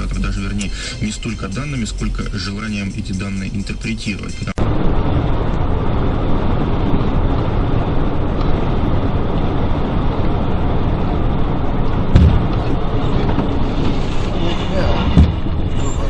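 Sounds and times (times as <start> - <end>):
vehicle road noise: 0.0 - 16.0
short thump: 12.1 - 13.5, 15.1 - 15.6.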